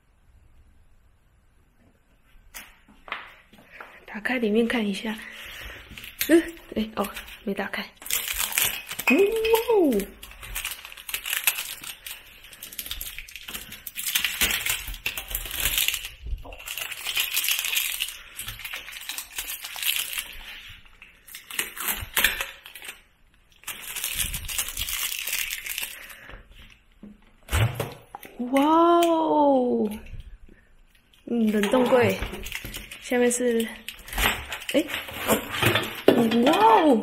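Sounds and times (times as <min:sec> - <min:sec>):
packaging crinkling: 0:05.4 - 0:26.9, 0:30.0 - 0:37.0.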